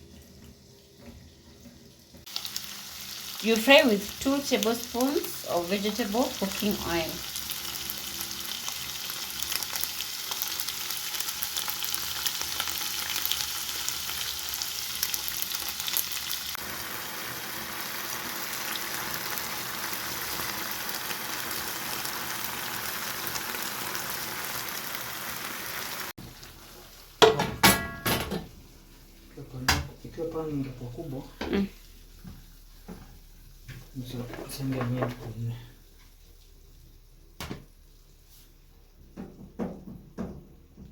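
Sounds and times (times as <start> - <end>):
meat sizzling in a pan: 2.2 - 29.2.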